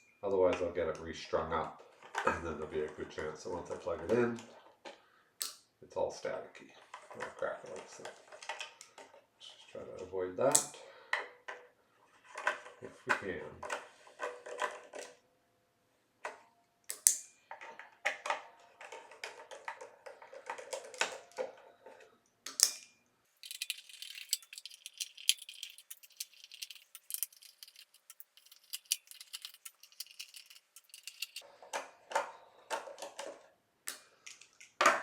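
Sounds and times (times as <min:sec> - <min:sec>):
metal parts and tools rattling: 0:23.4 - 0:31.7.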